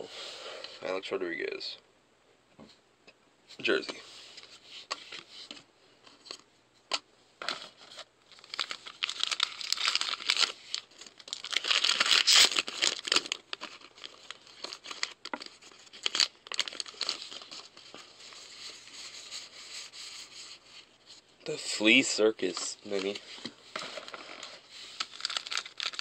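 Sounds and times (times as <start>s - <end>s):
foil wrapper crinkling and tearing: 8.3s - 19.3s, 22.4s - 26.0s
sharp foil snaps: 11.6s - 12.7s.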